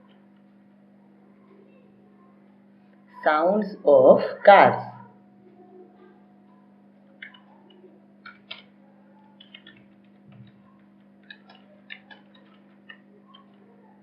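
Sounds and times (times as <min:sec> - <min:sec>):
low electrical hum: 0:00.0 - 0:14.0
writing clicks and taps: 0:09.3 - 0:14.0.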